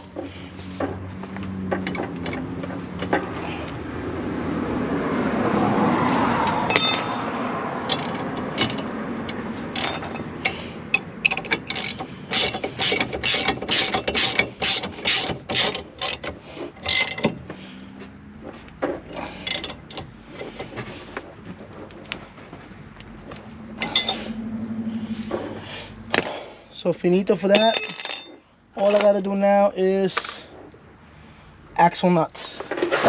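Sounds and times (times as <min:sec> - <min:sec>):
ringing metal clink: 0:06.7 - 0:07.3, 0:23.8 - 0:24.4, 0:27.5 - 0:29.3
ratchet wrench clicking: 0:07.9 - 0:17.3.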